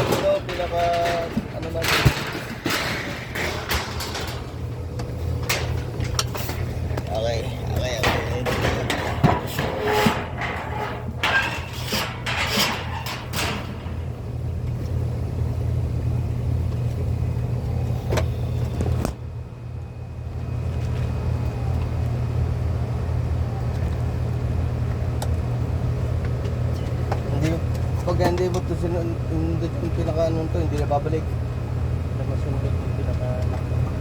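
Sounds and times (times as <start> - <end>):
sharp clicks and clattering handling: 0.0 - 14.1
low mechanical rumble: 0.0 - 34.0.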